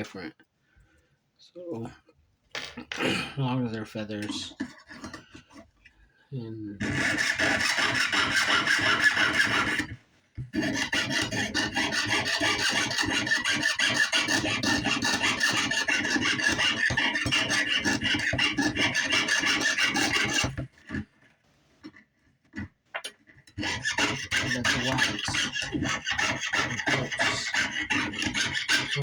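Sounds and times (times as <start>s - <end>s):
saw cutting sheet metal: 6.8s - 21.0s, 23.5s - 29.0s.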